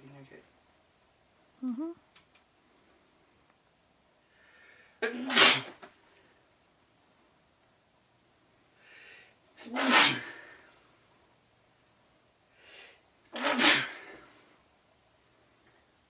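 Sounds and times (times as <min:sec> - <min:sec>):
person sneezing: 0:05.0 - 0:05.9, 0:09.6 - 0:10.6, 0:13.4 - 0:14.2.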